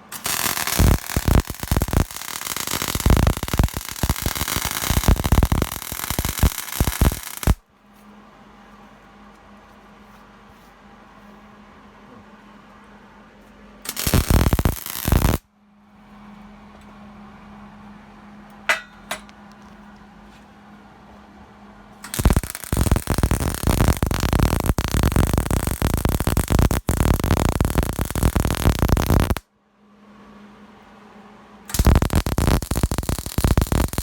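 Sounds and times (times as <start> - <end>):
welder arc crackling: 0.0 - 7.6, 13.9 - 15.4, 22.0 - 29.4, 31.7 - 34.0
steady hum: 0.0 - 34.0.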